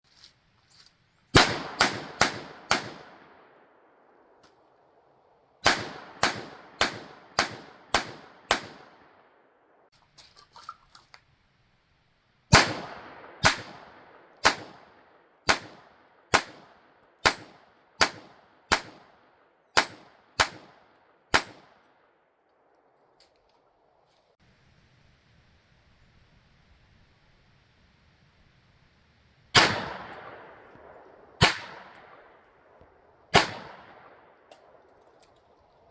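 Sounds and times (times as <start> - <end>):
pistol shots: 1.3 - 3.4, 5.6 - 9.1, 12.5 - 21.8, 29.6 - 32.3, 33.3 - 34.3.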